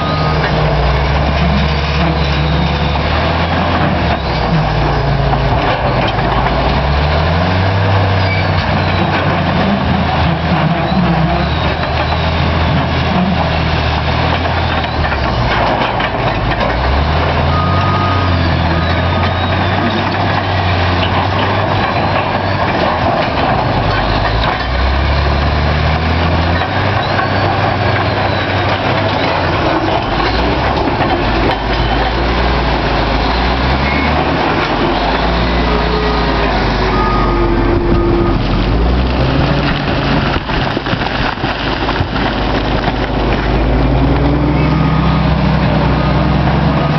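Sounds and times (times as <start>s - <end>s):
bulldozer diesel engine working: 0.0s - 46.9s
short beep: 35.6s - 38.6s, 44.6s - 45.2s.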